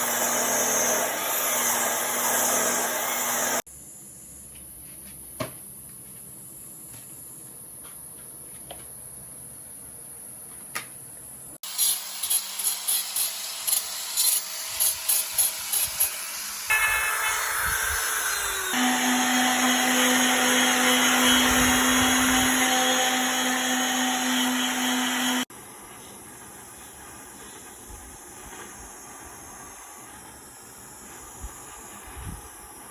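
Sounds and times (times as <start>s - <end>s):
power carving tool on wood: 0.0s - 3.6s, 11.6s - 25.5s.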